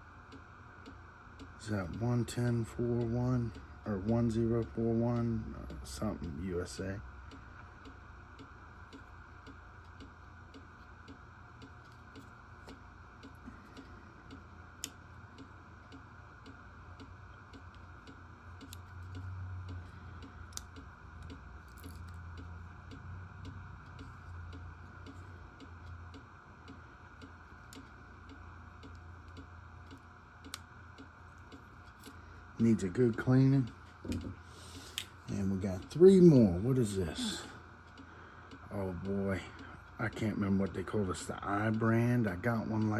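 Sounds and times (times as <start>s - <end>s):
low steady hum: 0.0s - 42.9s
clock ticking: 0.2s - 42.9s
sharp clicks: 7.3s - 36.0s.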